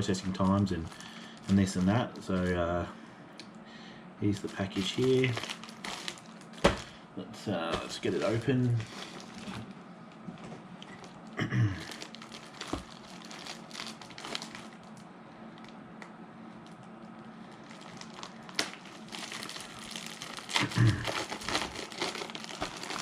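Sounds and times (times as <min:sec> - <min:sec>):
packaging crinkling: 0:00.0 - 0:02.5, 0:04.3 - 0:07.0, 0:07.7 - 0:09.7, 0:11.8 - 0:15.8, 0:16.6 - 0:23.0.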